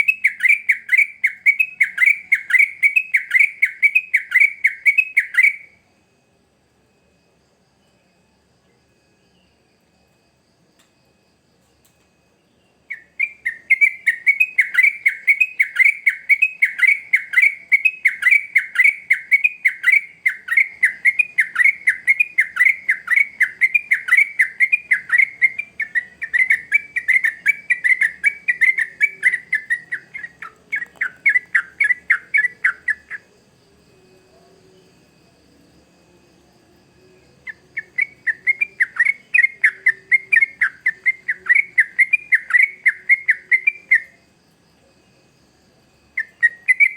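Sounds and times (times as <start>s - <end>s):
bird singing rapid notes: 0.0s - 5.7s, 12.9s - 33.3s, 46.2s - 46.9s.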